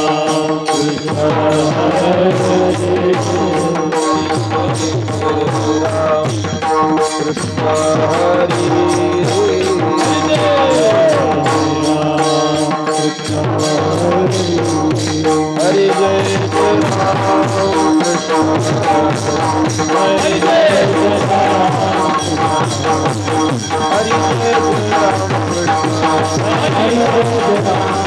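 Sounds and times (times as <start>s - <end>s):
hand drum beat: 0.0s - 28.0s
person singing wordless phrase: 7.6s - 22.8s, 23.9s - 28.0s.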